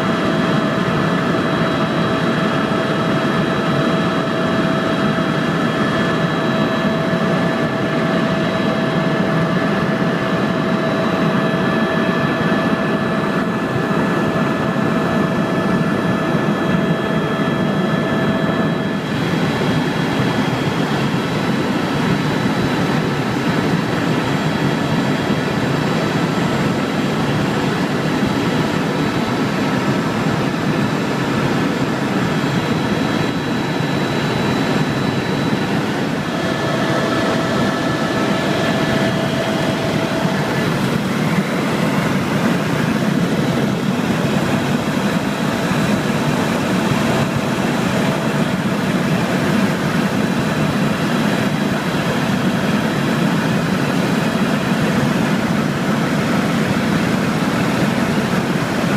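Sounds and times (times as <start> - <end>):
helicopter engine and rotor drone: 0.0 - 58.9
high whines: 31.6 - 47.4.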